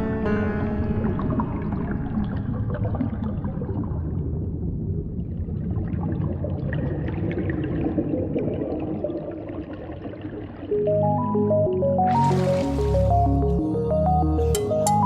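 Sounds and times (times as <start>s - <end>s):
water sloshing and gurgling: 0.8s - 13.7s
small water splashes: 12.2s - 13.3s.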